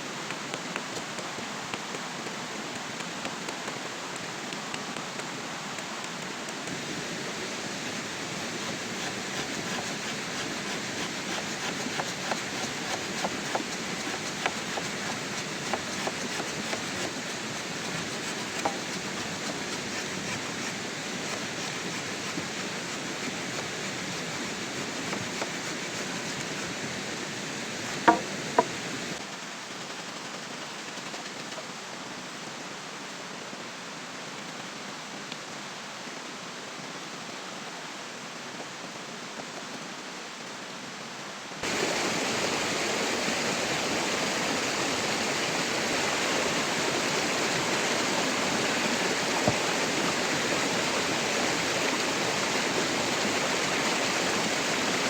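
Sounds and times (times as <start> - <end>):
steady rain: 0.0 - 55.0
sharp knocks: 28.0 - 28.8.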